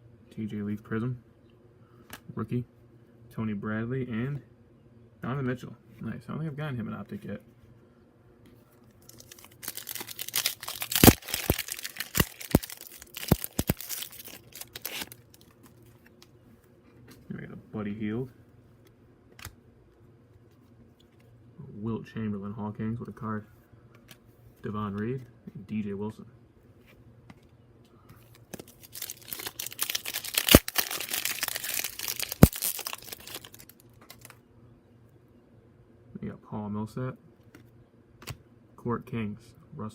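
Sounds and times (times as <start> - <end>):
wrapper tearing and crinkling: 9.0 - 15.7, 28.4 - 34.4.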